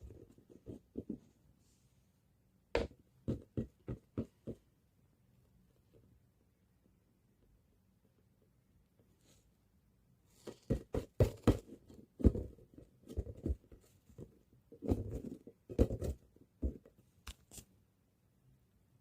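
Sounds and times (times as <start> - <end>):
ball bouncing thuds and taps: 2.7 - 4.7, 10.4 - 17.0.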